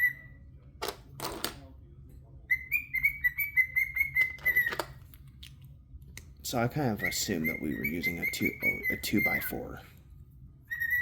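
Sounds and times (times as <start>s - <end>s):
bird singing whistled notes: 2.5s - 4.8s, 6.8s - 9.8s, 10.7s - 11.0s.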